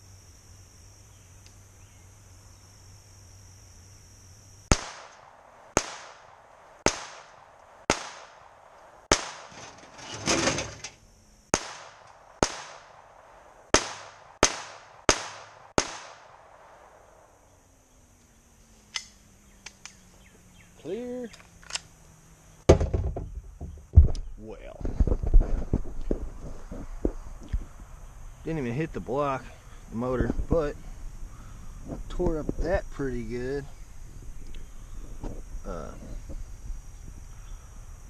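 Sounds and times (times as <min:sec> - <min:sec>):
pistol shots: 0:04.7 - 0:09.6, 0:11.5 - 0:13.1, 0:13.7 - 0:16.8.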